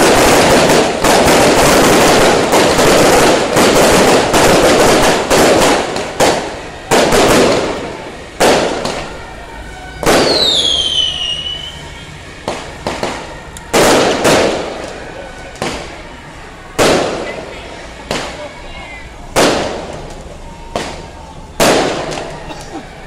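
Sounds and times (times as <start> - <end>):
firecrackers popping: 0.0 - 23.0
high descending whistle: 9.0 - 12.2.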